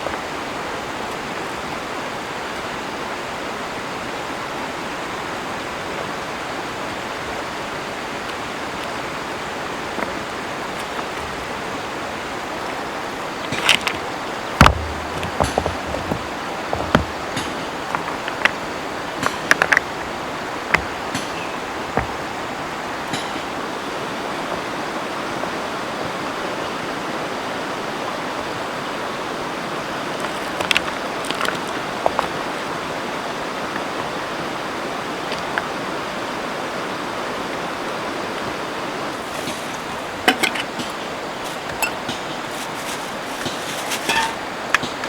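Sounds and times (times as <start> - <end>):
river water flowing: 0.0 - 45.0
light knocks and clicks: 13.5 - 18.5.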